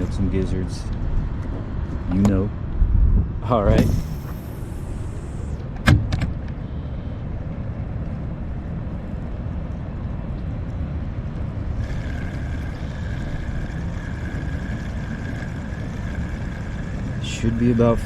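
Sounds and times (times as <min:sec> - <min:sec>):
low outdoor rumble: 0:00.0 - 0:18.0
high-pitched hum: 0:03.4 - 0:07.5, 0:11.6 - 0:18.0.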